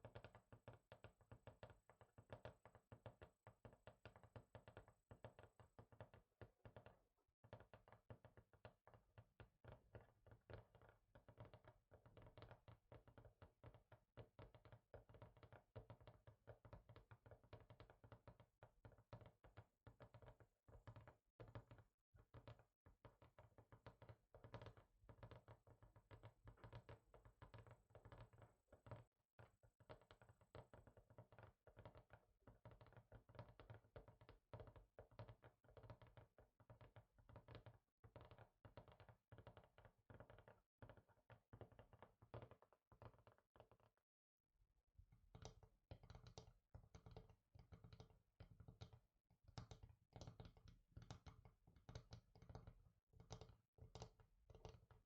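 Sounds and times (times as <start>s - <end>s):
finger tapping on hard surface: 45.3s - 55.0s.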